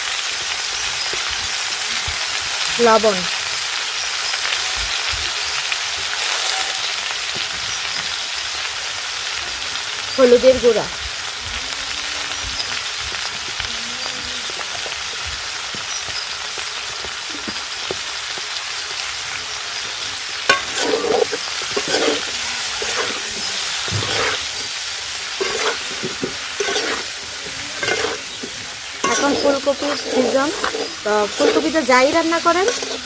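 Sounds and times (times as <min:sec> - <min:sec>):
vegetables sizzling in hot oil: 0:00.0 - 0:33.0
spatula scraping and knocking pan: 0:20.4 - 0:33.0.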